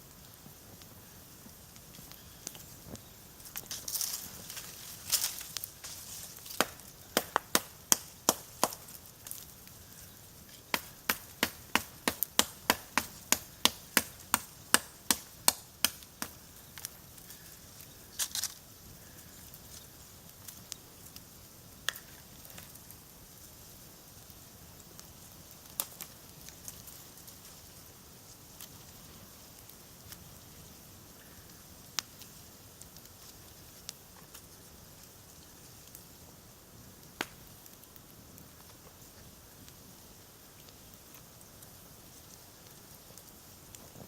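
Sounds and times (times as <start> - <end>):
blade chopping wood: 10.7 - 16.4.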